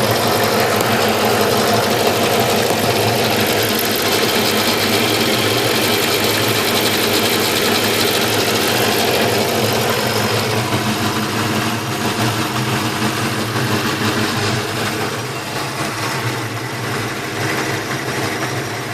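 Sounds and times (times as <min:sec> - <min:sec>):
car engine idling with a miss: 0:00.0 - 0:18.9
exhaust popping: 0:00.0 - 0:18.9
odd engine noise: 0:00.0 - 0:18.9.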